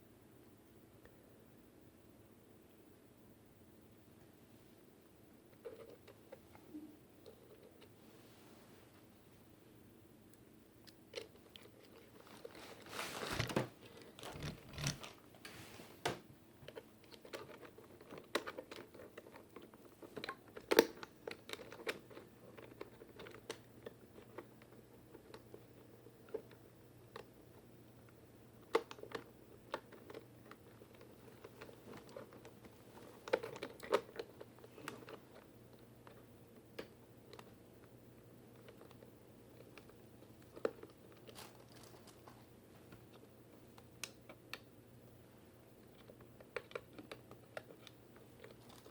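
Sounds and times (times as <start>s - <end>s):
short rustle: 12.2s - 16.0s.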